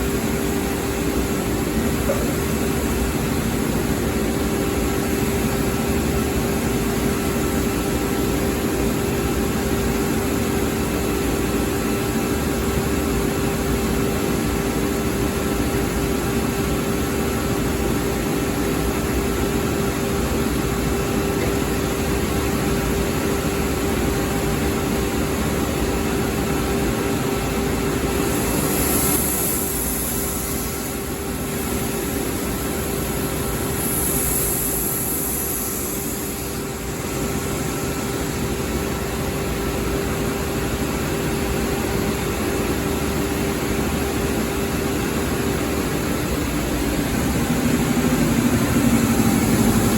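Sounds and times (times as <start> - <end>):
belt sander running: 28.1 - 31.1, 46.1 - 49.9
high hiss: 28.1 - 37.8.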